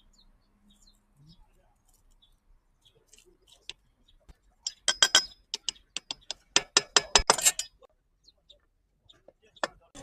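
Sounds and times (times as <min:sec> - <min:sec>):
sharp metallic clinks: 0:04.6 - 0:07.9.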